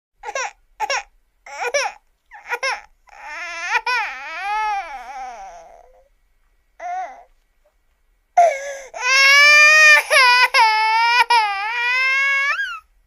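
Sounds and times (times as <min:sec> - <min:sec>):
cartoon crying sobs and wail: 0:09.0 - 0:12.8.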